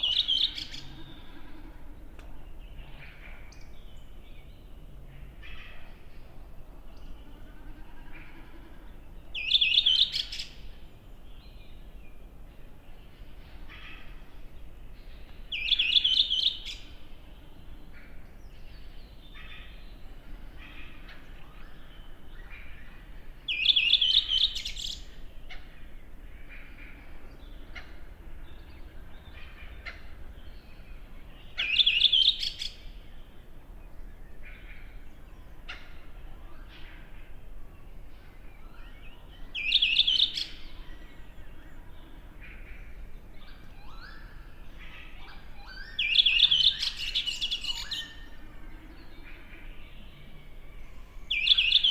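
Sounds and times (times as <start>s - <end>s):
songbird trilling song: 0.0s - 51.9s
other birds calling: 13.3s - 51.9s.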